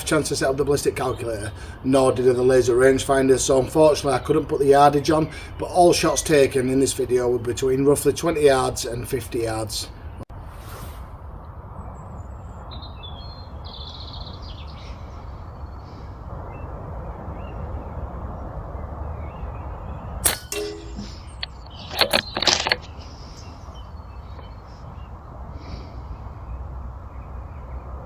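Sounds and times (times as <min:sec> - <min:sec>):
birds chirping: 0:00.0 - 0:10.3, 0:11.8 - 0:17.9, 0:18.8 - 0:28.0
low outdoor rumble: 0:00.0 - 0:13.4
air rifle shot: 0:20.2 - 0:21.3.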